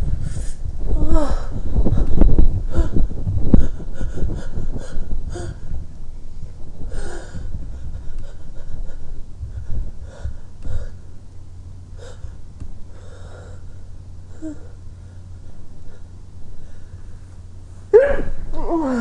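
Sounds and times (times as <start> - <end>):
steady low hum: 0.0 - 19.0
person breathing heavily: 0.1 - 5.8, 6.8 - 11.1, 12.0 - 19.0
person moaning: 18.0 - 19.0.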